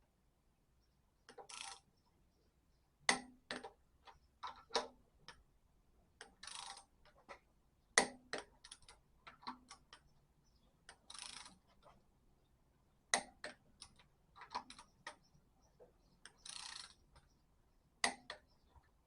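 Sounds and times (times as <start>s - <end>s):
ratchet rasping: 1.5s - 1.8s, 6.4s - 6.8s, 11.1s - 11.6s, 16.3s - 17.0s
torque wrench clicks: 16.2s - 17.0s.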